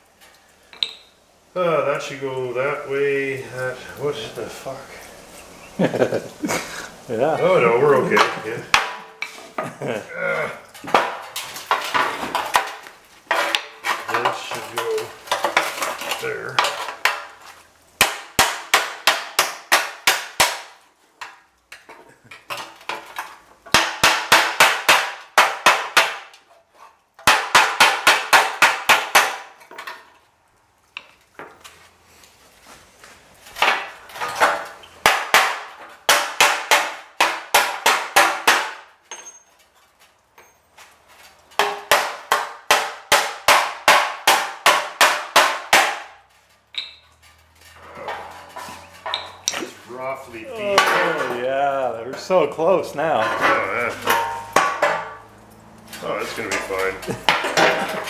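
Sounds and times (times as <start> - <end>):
hammer striking sheet metal: 18.0 - 20.8, 23.7 - 26.3, 27.2 - 29.5, 34.5 - 38.9, 41.6 - 46.2, 53.2 - 55.3.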